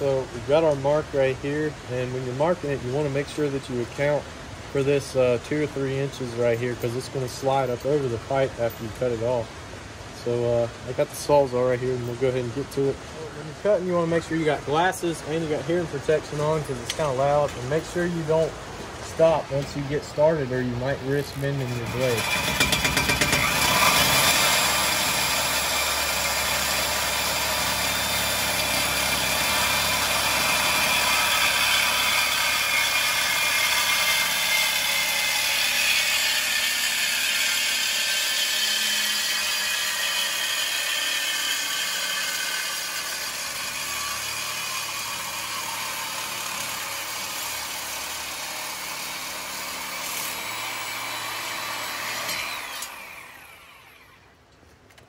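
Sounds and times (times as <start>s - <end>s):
reciprocating saw cutting metal pipe: 19.1s - 54.2s.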